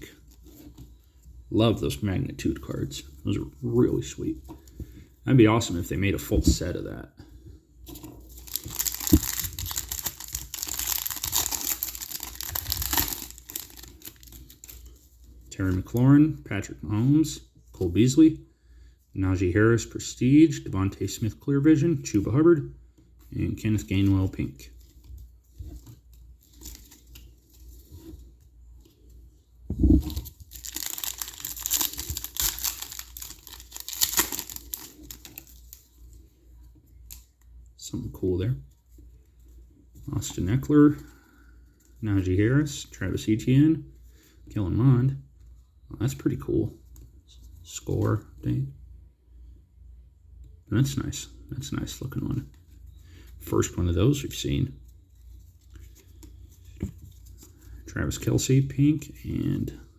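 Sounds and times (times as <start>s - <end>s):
foil pack crinkling: 8.3s - 14.9s, 30.0s - 35.8s.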